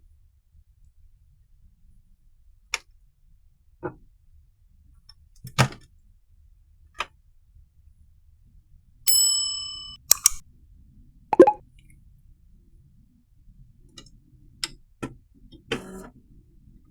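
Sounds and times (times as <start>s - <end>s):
bell-like ding: 9.1s - 10.4s.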